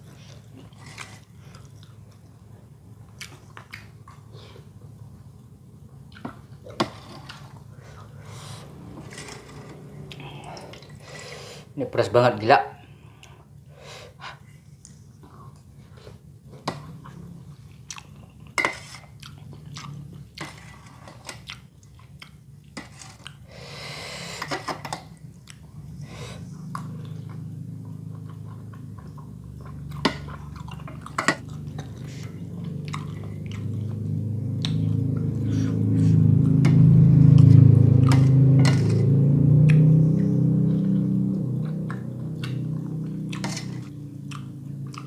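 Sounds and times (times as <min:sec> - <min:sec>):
person chewing food: 0:00.0 - 0:05.4, 0:06.0 - 0:11.0, 0:14.4 - 0:45.0
low hum: 0:04.8 - 0:11.5, 0:25.0 - 0:45.0.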